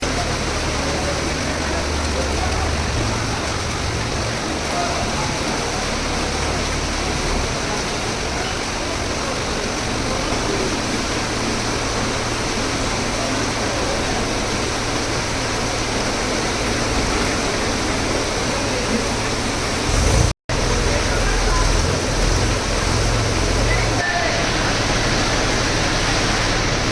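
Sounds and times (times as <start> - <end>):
rainwater rushing: 0.0 - 26.9
vehicle engine running: 0.0 - 26.9.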